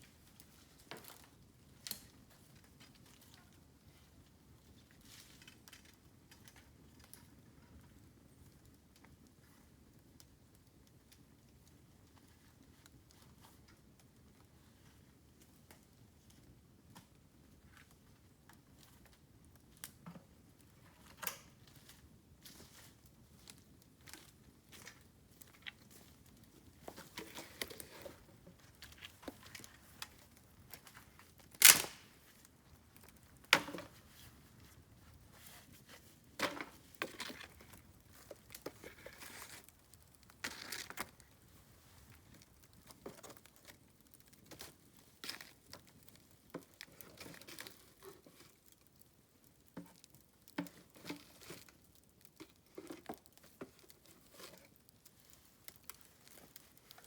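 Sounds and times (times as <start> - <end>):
bamboo fire crackling: 0.0 - 57.0
loud sharp pops: 31.6 - 32.1.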